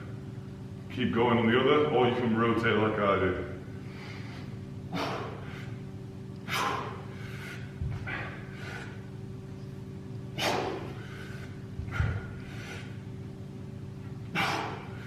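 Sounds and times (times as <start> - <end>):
man breathing forcefully: 3.7 - 9.4, 10.2 - 15.0.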